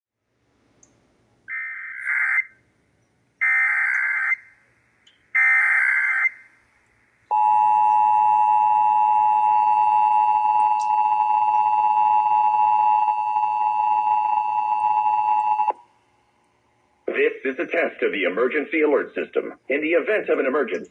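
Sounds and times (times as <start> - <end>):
data tone bursts: 7.3 - 15.7.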